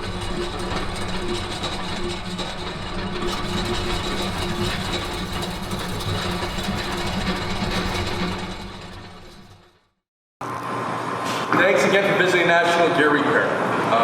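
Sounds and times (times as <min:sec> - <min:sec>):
gearbox whirring with gear whine: 0:00.0 - 0:09.8.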